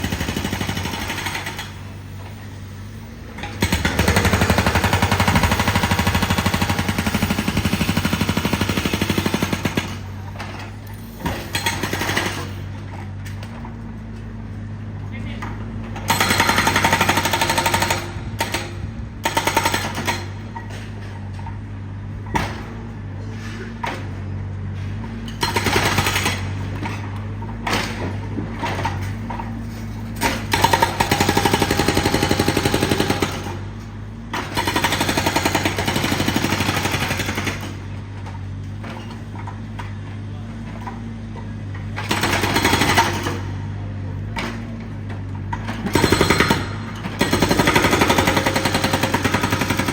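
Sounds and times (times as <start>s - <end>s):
jackhammer hammering: 0.0s - 1.8s, 3.4s - 10.2s, 16.1s - 20.4s, 30.2s - 33.7s, 34.3s - 37.9s, 42.0s - 43.6s, 45.8s - 49.9s.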